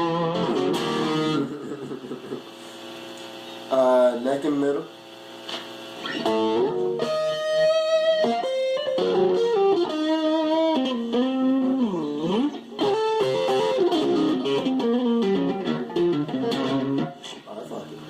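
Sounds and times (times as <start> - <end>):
electric guitar single-note lead: 0.0 - 1.9, 6.0 - 17.2.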